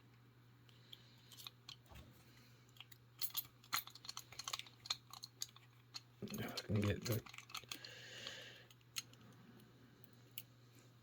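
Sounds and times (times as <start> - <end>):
lock pick clicking and scraping: 2.8 - 7.9.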